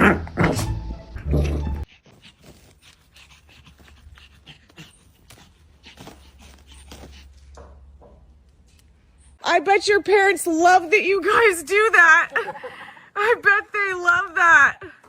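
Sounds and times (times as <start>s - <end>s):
dog panting: 1.7s - 7.6s.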